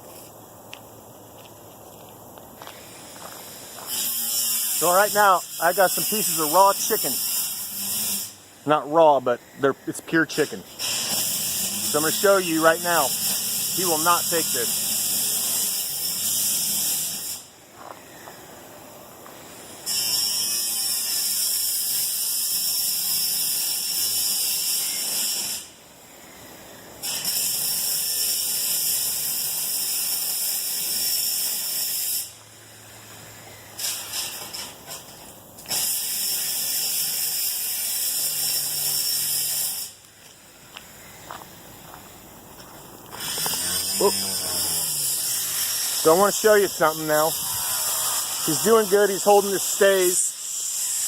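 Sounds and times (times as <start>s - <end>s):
angle grinder cutting sheet metal: 3.7s - 8.4s, 10.2s - 17.5s, 19.8s - 25.7s, 27.0s - 32.4s, 33.8s - 40.0s, 43.1s - 51.0s.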